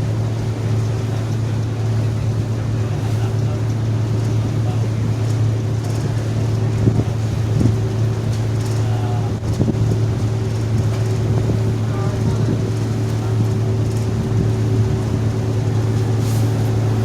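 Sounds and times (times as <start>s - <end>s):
ferry engines droning: 0.0s - 17.0s
wind on microphone: 5.6s - 8.6s, 9.3s - 17.0s.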